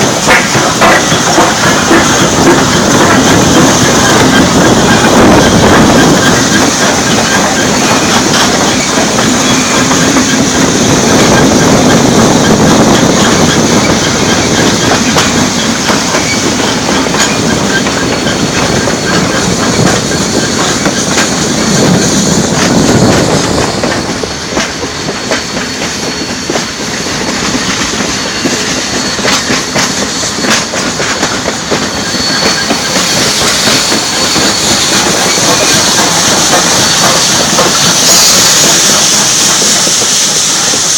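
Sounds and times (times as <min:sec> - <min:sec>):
train wheels clattering over rails: 0:00.0 - 0:40.9.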